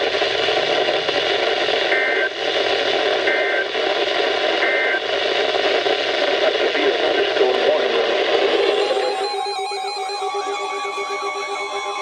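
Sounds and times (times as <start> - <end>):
radio static hiss: 0.0 - 12.0
warbling data bursts: 8.5 - 12.0.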